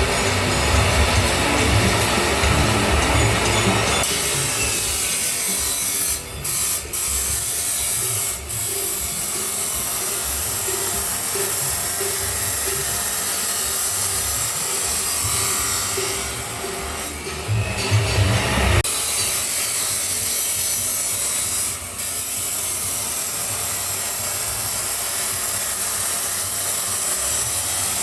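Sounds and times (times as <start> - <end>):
grinder cutting steel pipe: 0.0 - 28.0.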